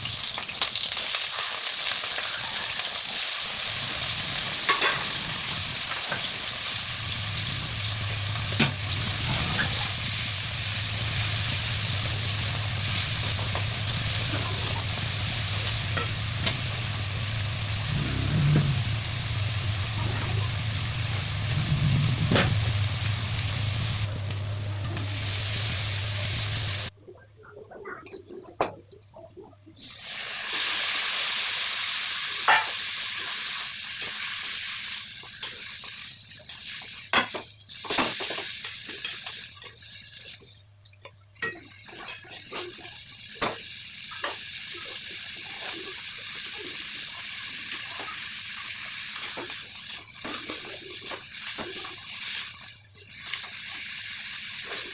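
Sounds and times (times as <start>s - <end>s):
curry sizzling in a pan: 0.0s - 26.9s, 29.8s - 54.9s
low hum: 6.8s - 26.9s.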